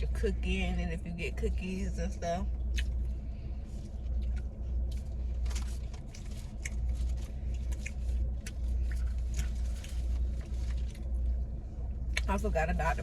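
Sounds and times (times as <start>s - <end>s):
car rumble: 0.0s - 13.0s
person chewing food: 2.6s - 11.3s.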